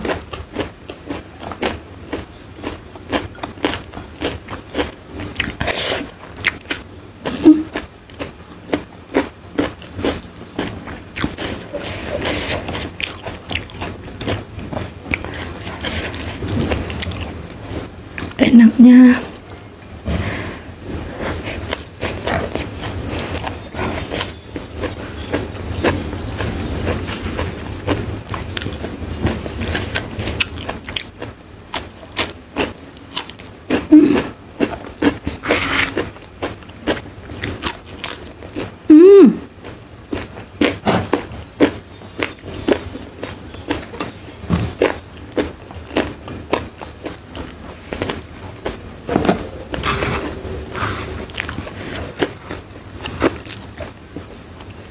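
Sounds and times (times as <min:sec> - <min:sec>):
chewing crisp food: 0:00.0 - 0:18.4, 0:21.0 - 0:38.9, 0:39.5 - 0:54.9
person humming: 0:38.9 - 0:39.5.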